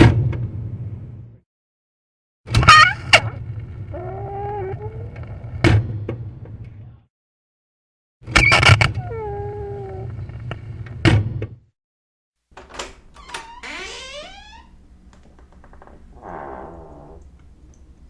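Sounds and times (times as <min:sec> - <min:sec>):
door banging: 0:12.6 - 0:14.8
door hinges creaking: 0:12.6 - 0:17.4.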